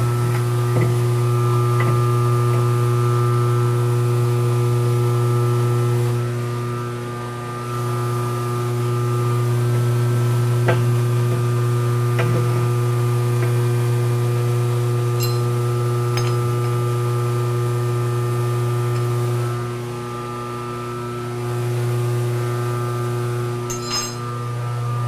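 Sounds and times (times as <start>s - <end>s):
metal lathe humming: 7.6s - 20.8s, 21.6s - 25.0s.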